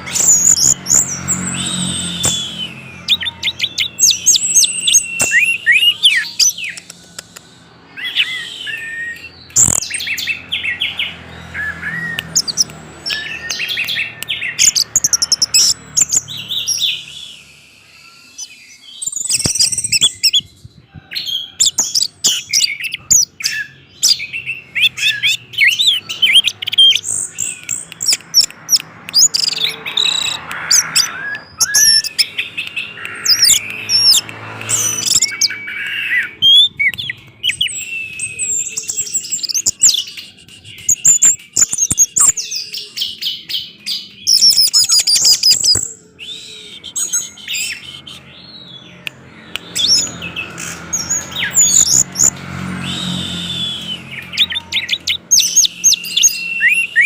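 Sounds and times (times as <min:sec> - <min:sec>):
thrush singing: 0:22.1 - 0:44.5.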